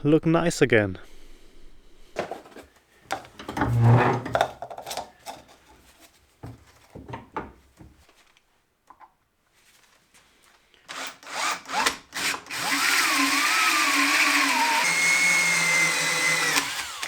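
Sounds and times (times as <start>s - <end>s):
scraping rub: 3.4s - 6.2s.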